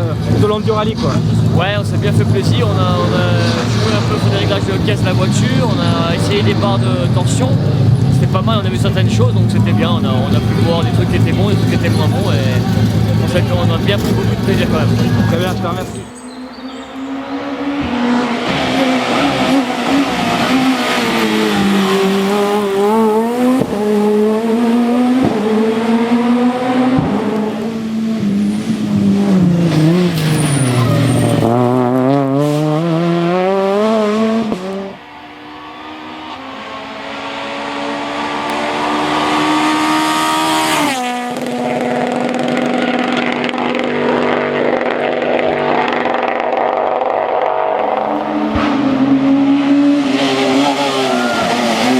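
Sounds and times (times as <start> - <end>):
rally car engines revving: 0.0 - 51.9.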